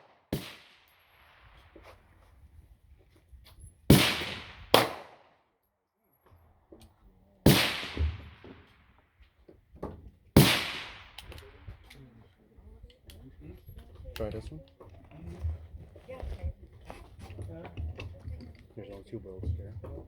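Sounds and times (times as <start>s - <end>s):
gunshots echoing: 0.0s - 1.6s, 3.9s - 5.4s, 7.4s - 8.7s, 10.4s - 11.6s.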